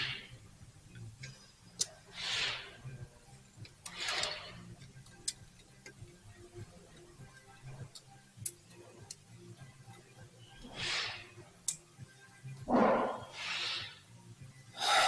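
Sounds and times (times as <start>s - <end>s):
short hissing bursts: 2.1s - 2.8s, 13.4s - 14.0s.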